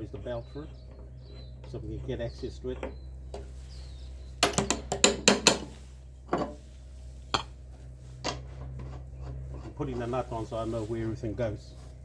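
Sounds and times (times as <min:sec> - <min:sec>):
metal tools clinking: 0:04.4 - 0:06.5.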